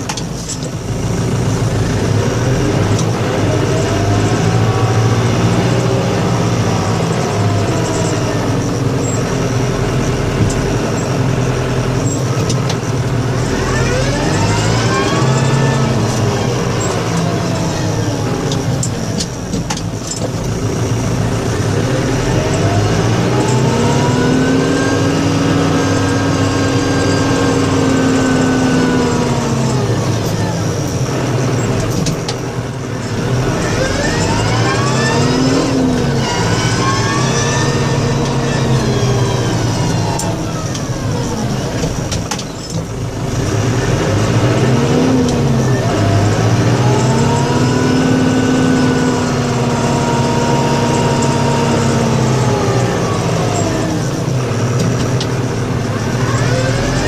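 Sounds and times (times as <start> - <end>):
truck engine running: 0.0 - 57.0.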